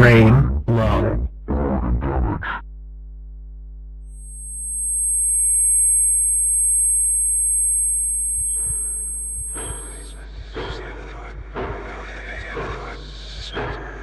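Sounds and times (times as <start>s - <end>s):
piercing high-pitched tones: 4.2s - 10.2s
low synthesized drone: 4.3s - 10.1s.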